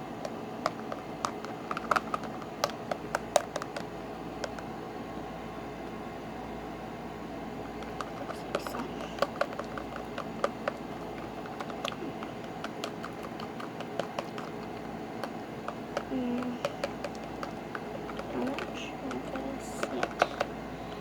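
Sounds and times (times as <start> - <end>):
steady background hum: 0.0 - 21.0
tool tapping a container: 7.8 - 20.5.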